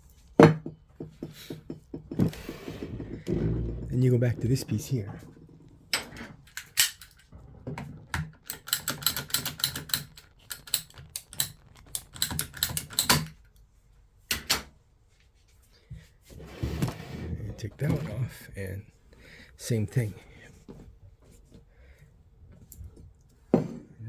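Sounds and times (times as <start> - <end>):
pipe clicking and tapping on workbench: 0.4 - 2.3.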